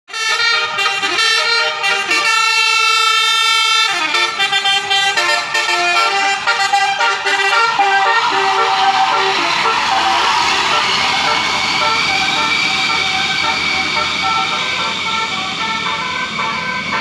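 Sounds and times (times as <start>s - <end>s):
multi-note bus air horn tune: 0.1s - 17.0s.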